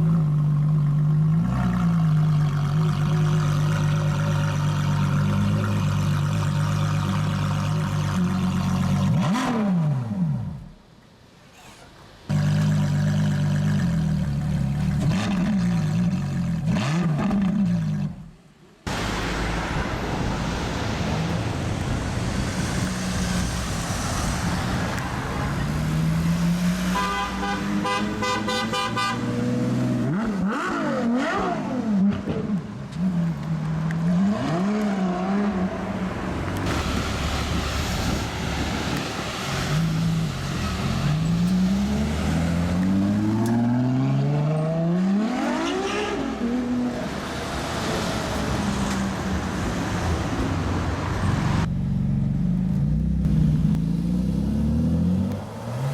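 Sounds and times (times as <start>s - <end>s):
car engine revving: 18.9s - 55.9s
car horn: 26.9s - 29.6s.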